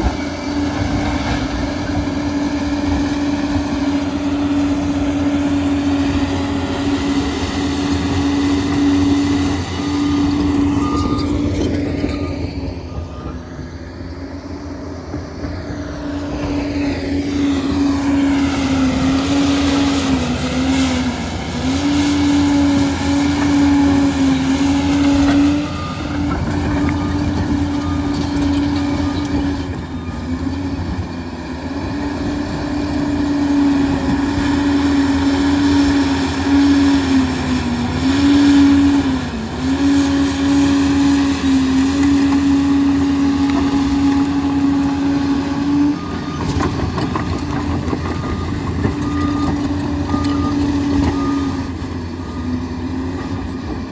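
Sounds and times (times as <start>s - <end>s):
bulldozer diesel engine droning: 0.0s - 53.9s.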